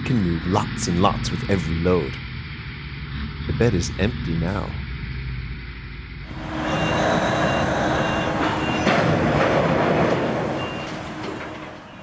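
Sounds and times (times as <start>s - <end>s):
truck running: 0.0s - 12.0s
reversing alarm beeping: 6.3s - 12.0s.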